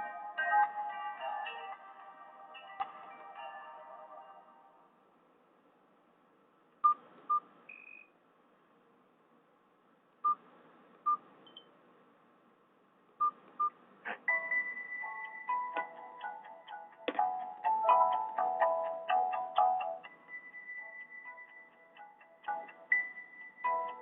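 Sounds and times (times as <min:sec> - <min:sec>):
electronic ringtone melody: 0:14.3 - 0:24.0.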